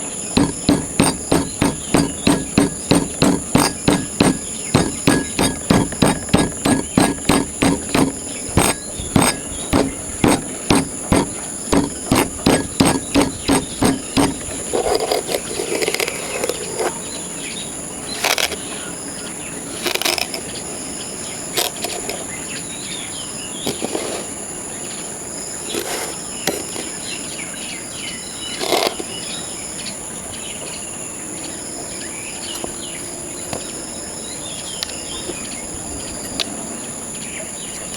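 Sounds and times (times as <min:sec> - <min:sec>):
tools chopping into sand: 0:00.3 - 0:17.0.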